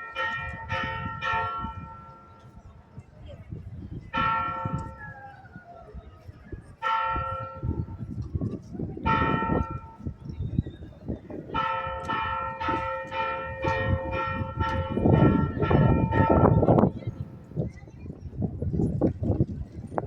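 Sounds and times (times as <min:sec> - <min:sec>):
church bell ringing: 0:00.0 - 0:02.4, 0:04.2 - 0:05.0, 0:06.8 - 0:07.9, 0:09.1 - 0:10.0, 0:11.6 - 0:16.9.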